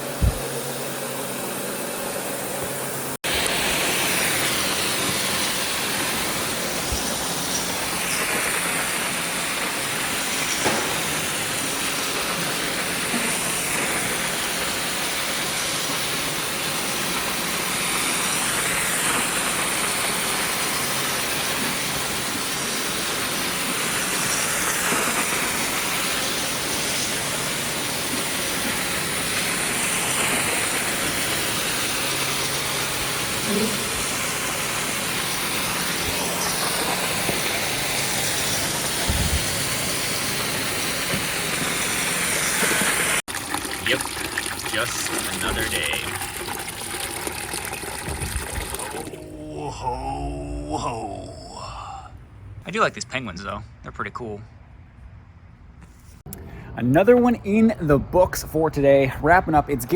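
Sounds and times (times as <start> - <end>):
floor-cleaning machine hissing: 0.0 - 43.2.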